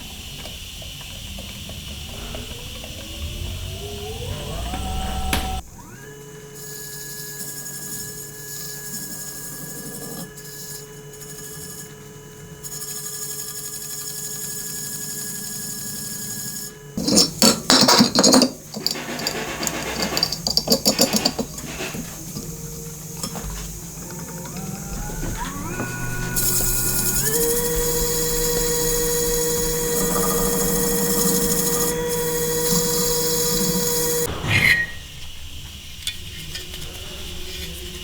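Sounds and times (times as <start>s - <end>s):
power tool motor running: 0.0s - 34.3s
tool rasping and scraping: 6.6s - 35.1s.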